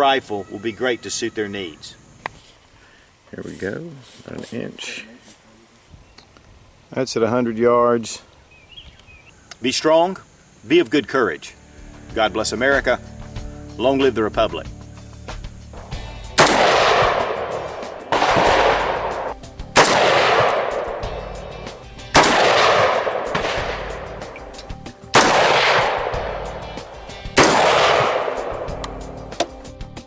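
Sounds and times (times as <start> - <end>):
rifle shots echoing: 15.8 - 29.4.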